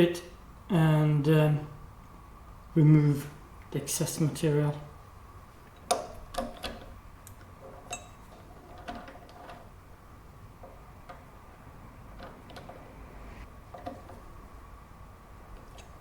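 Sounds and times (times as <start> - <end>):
faint steady hum: 0.0 - 16.0
light clicks and metallic knocks: 12.1 - 12.9.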